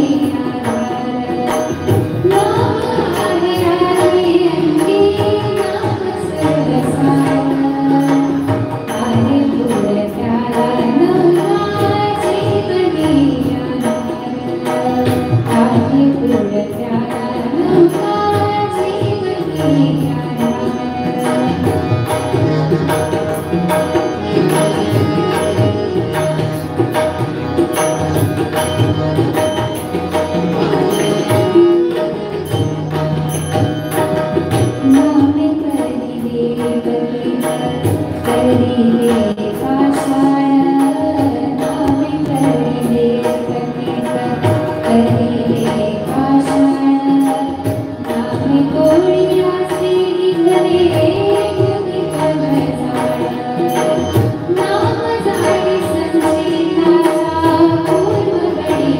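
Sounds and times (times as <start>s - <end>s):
hand drum: 0.0s - 58.9s
steady held tones: 0.0s - 58.9s.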